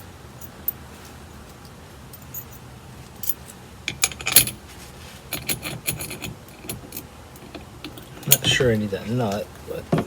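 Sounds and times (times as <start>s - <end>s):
metal hardware clicking and clinking: 3.2s - 4.6s, 5.3s - 8.6s.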